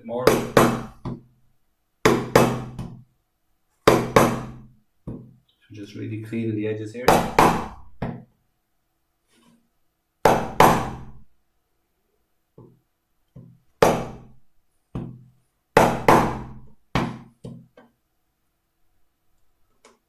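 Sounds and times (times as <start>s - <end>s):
mallet knocking chisel into wood: 0.2s - 1.3s, 2.0s - 3.0s, 3.8s - 5.4s, 7.1s - 8.3s, 10.2s - 11.2s, 13.4s - 14.3s, 15.8s - 17.8s.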